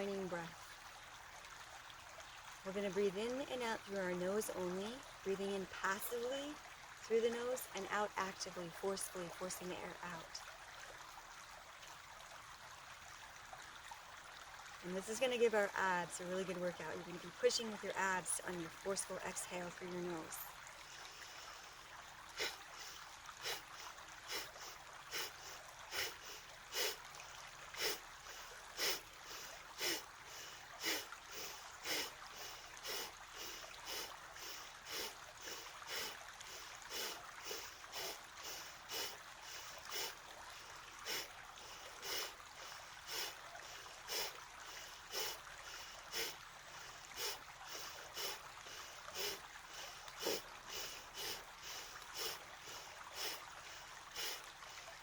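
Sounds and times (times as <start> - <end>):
forceful nasal exhales: 47.2 - 53.4.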